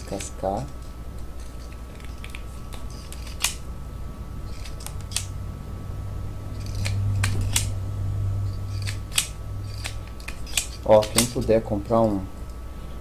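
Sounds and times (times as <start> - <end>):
low hum: 0.0 - 13.0
wire stripper snipping: 1.7 - 3.6, 4.5 - 5.4, 6.6 - 7.8, 8.5 - 12.1.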